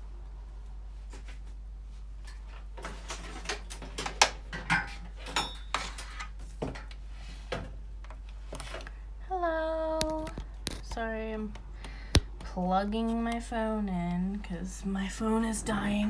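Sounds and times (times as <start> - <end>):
steady low hum: 0.0 - 3.6, 6.9 - 16.0
phone and cable clicks and taps: 9.9 - 12.6.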